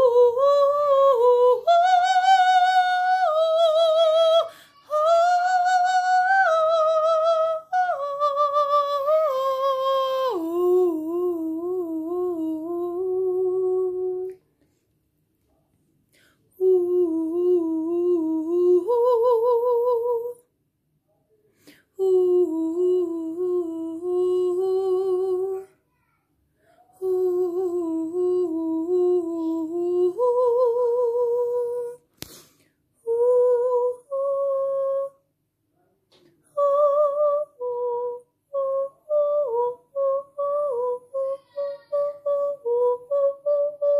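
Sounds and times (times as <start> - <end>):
person humming with vibrato: 16.6 - 20.4, 27.0 - 32.0, 36.6 - 43.9.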